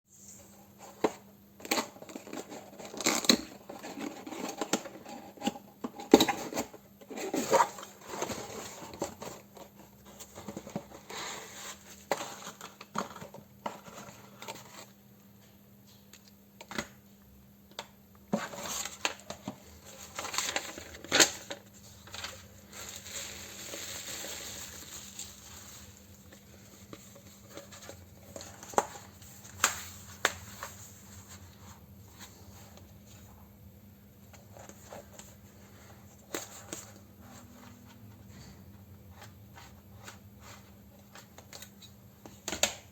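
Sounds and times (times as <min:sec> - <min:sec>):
faint steady hum: 0:00.1 - 0:42.9
packaging tearing and crinkling: 0:22.1 - 0:26.1.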